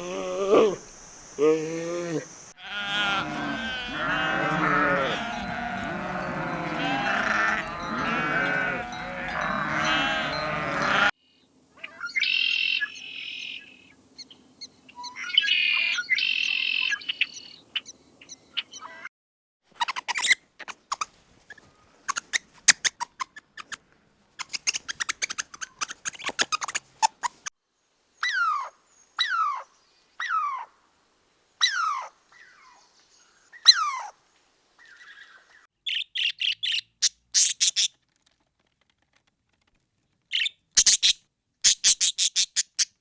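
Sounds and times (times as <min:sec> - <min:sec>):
flock of livestock bleating: 0:02.6 - 0:11.2
high repeated bird calls: 0:02.8 - 0:11.1, 0:11.8 - 0:19.1, 0:24.4 - 0:27.4, 0:34.8 - 0:37.9, 0:40.3 - 0:43.0
sharp short clicks and chirps: 0:22.1 - 0:23.8, 0:24.4 - 0:27.5, 0:36.2 - 0:38.0, 0:40.3 - 0:43.0.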